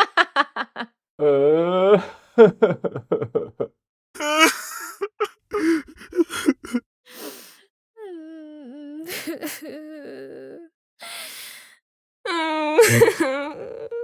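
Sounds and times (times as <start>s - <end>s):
person gasping cry: 1.8s - 2.3s, 4.2s - 6.8s, 12.8s - 13.4s.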